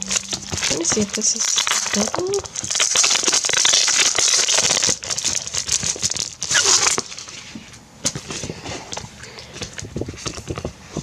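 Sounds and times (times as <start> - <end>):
plastic sleeves crinkling: 0.0 - 11.0.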